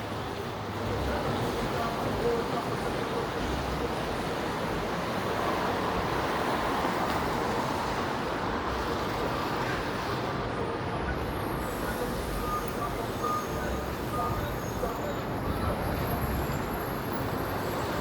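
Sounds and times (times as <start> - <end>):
vehicles passing on wet road: 3.1 - 10.5.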